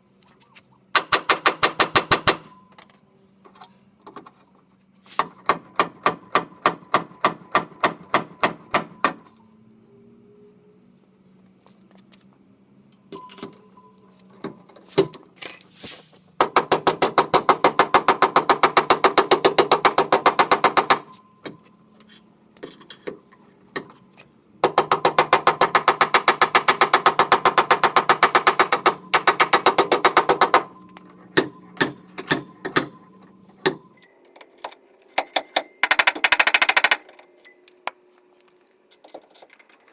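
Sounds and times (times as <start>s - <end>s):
power tool rapid impacts: 1.0s - 2.5s, 16.4s - 21.1s, 24.6s - 30.7s, 35.2s - 37.1s.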